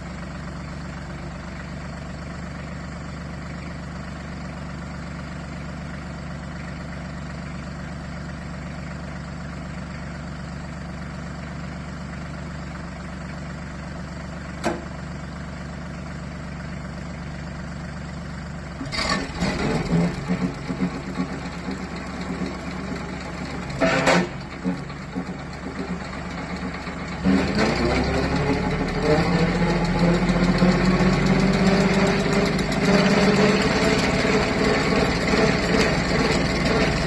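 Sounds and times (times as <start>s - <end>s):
tractor diesel engine running: 0.0s - 37.0s
grinder wheel crunching stump: 30.0s - 37.0s.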